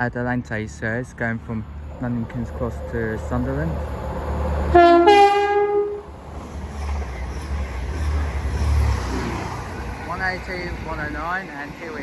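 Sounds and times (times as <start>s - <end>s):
train rumbling past: 1.2s - 12.0s
two-tone train horn: 4.7s - 6.1s.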